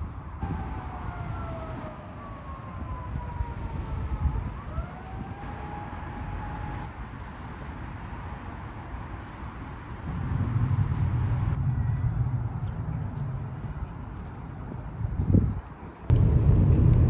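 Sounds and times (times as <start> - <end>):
wind noise rumble: 0.0 - 17.0
siren wailing: 0.4 - 6.9.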